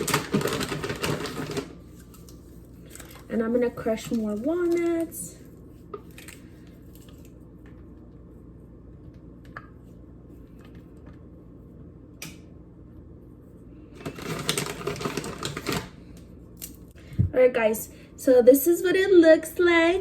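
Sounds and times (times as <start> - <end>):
walnut shells crackling: 14.0 - 15.9.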